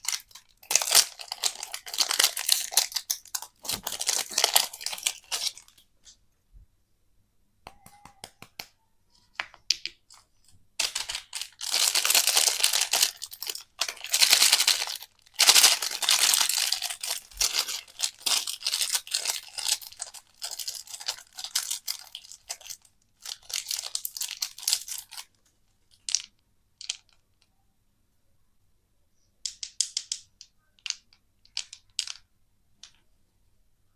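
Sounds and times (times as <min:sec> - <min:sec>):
wrapper tearing and crinkling: 0:00.0 - 0:05.8, 0:10.8 - 0:25.3.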